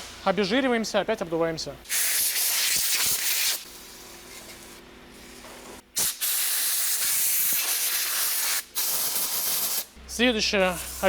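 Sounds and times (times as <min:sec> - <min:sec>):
pressurised spray hissing: 0:06.0 - 0:09.9, 0:10.6 - 0:11.0.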